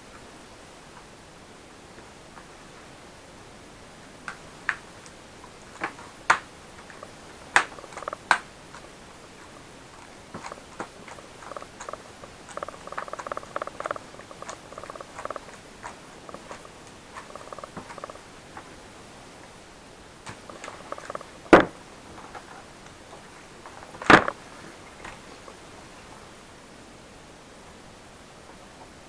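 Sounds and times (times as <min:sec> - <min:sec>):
laptop parts clicking and tapping: 0:05.8 - 0:08.9, 0:10.3 - 0:18.2, 0:20.3 - 0:21.7
faint buzzing rattle: 0:06.7 - 0:18.3, 0:20.2 - 0:22.6.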